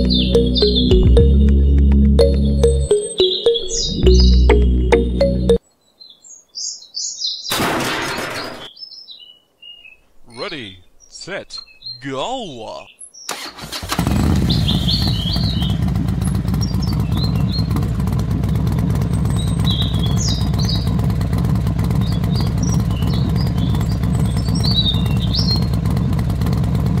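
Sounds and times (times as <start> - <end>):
birds chirping: 0.0 - 7.5, 8.6 - 13.5, 14.4 - 21.0, 21.9 - 25.8
motorcycle engine idling: 13.9 - 27.0.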